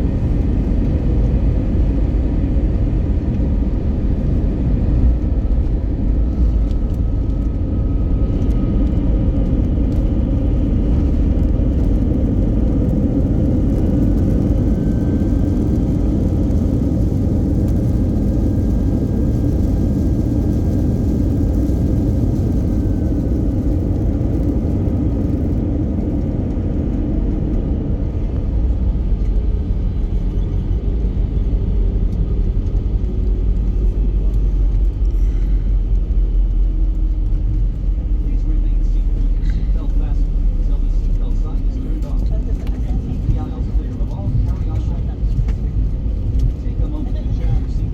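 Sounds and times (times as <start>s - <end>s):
low rumble of jet engines: 0.0s - 47.9s.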